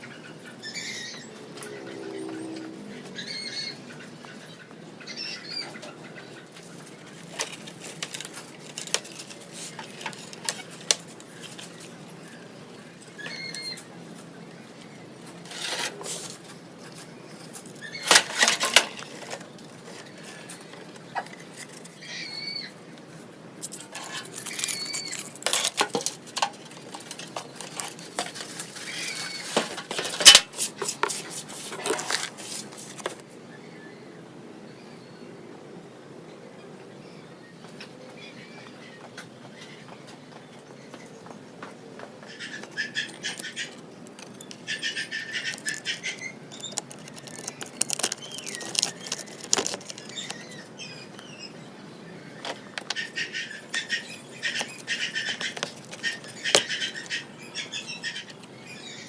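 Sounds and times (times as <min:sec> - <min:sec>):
small parts and tools clattering: 0:07.2 - 0:11.8, 0:15.4 - 0:17.0, 0:17.6 - 0:22.0, 0:23.6 - 0:33.2, 0:43.0 - 0:50.6, 0:54.4 - 0:57.2.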